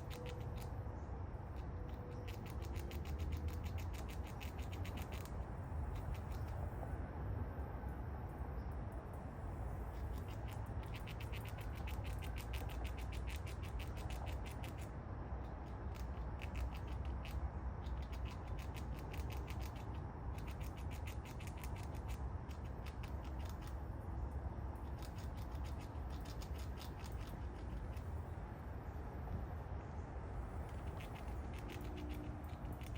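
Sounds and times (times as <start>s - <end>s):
low outdoor rumble: 0.0s - 32.9s
squirrel gnawing and chewing: 0.0s - 32.9s.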